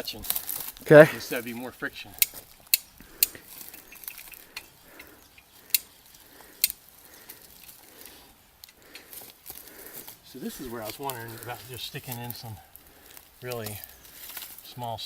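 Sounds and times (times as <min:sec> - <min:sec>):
faint rustling: 0:00.0 - 0:15.0
sharp clicks: 0:02.2 - 0:07.4.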